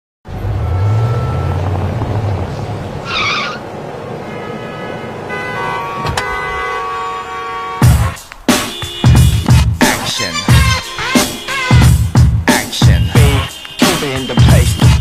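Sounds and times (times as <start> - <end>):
sustained car horn: 0.3 - 1.6, 4.1 - 12.1, 12.8 - 15.0
low engine rumble: 0.3 - 6.7.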